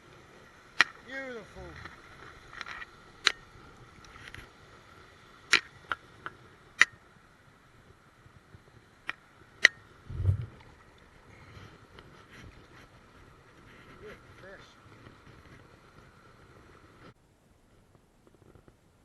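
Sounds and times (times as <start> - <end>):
dull low thump: 10.1 - 10.6.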